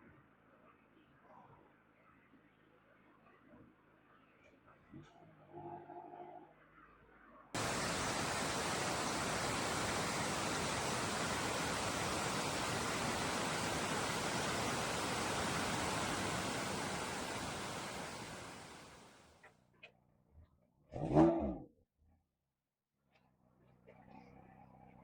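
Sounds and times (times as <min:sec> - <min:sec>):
waterfall rushing: 0:07.6 - 0:19.2.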